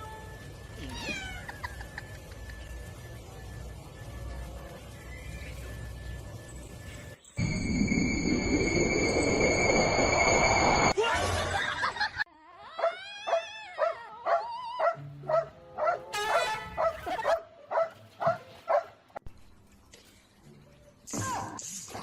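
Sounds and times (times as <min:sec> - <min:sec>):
dog whining yelps: 0:12.8 - 0:18.8.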